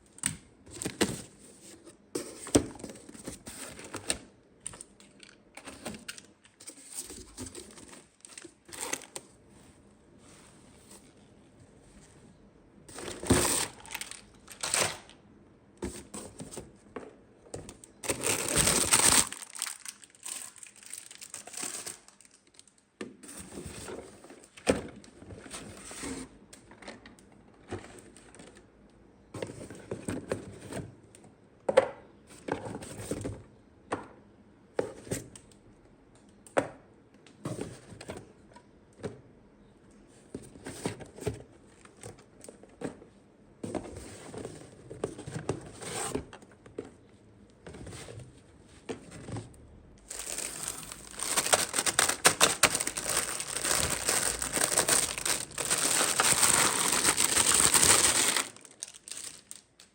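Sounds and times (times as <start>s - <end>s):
plastic wrap crinkling and tearing: 6.0s - 9.2s, 13.0s - 15.2s, 18.0s - 22.9s, 50.1s - 59.9s.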